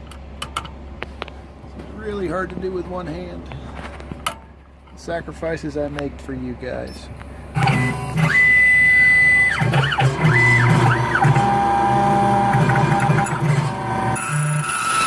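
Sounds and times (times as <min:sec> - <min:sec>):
low machine hum: 0:00.0 - 0:15.0
stepper motors whining: 0:06.8 - 0:15.0.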